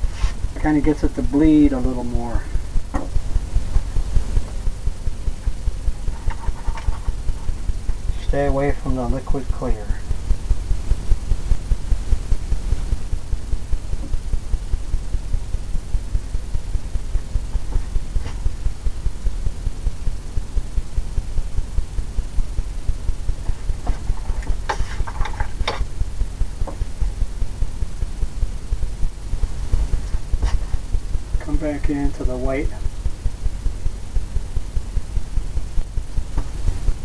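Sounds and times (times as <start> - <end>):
paintbrush rubbing on canvas: 0.0 - 0.6, 6.0 - 7.6, 17.5 - 18.6, 23.4 - 25.6, 29.7 - 30.9.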